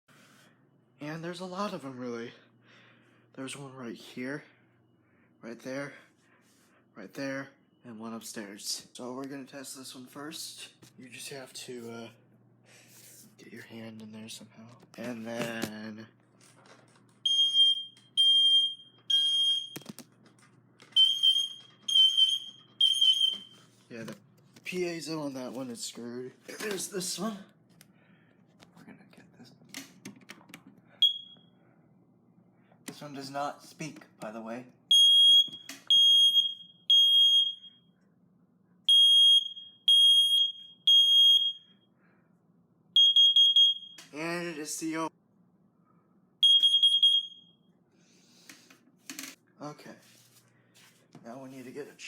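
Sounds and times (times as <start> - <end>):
smoke detector beeping: 17.3 - 19.9, 20.9 - 23.6, 31.0 - 31.5, 34.9 - 37.9, 38.9 - 41.9, 43.0 - 44.1, 46.4 - 47.7.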